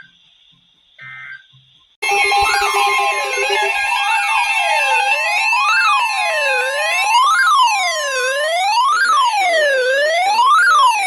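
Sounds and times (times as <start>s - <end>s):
steady electronic tones: 2.0s - 9.7s
electronic siren wailing: 2.0s - 11.0s.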